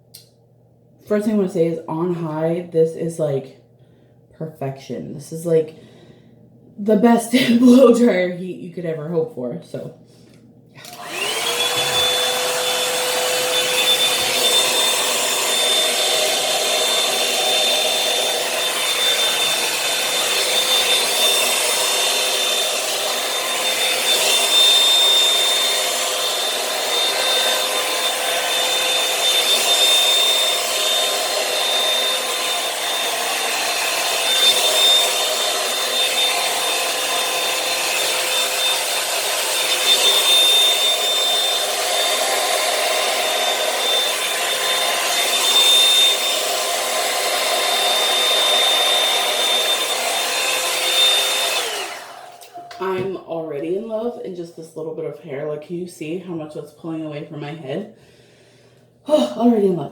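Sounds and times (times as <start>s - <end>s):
hair dryer motor whine: 10.8s - 53.1s.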